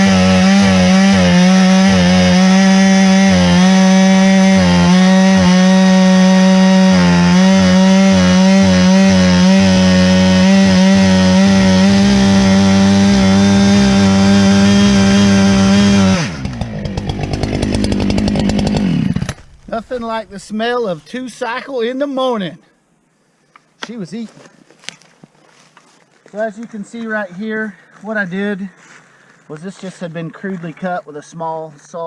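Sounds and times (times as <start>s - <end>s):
chainsaw running at high revs: 0.0s - 19.5s.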